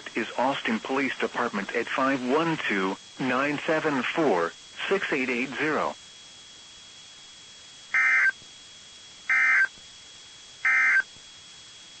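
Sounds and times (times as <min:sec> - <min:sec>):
bursts of data tones: 0:08.0 - 0:08.4, 0:09.3 - 0:09.7, 0:10.6 - 0:11.1.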